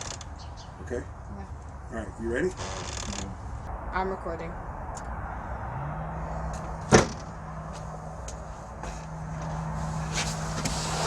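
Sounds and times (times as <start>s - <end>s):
steady low hum: 1.3s - 11.0s
sharp bang: 3.7s - 8.9s.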